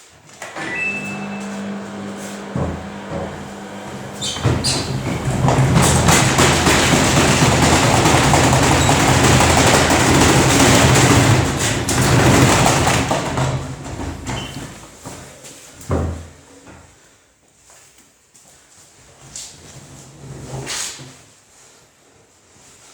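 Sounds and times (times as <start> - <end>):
washing machine spinning: 0.4 - 15.0.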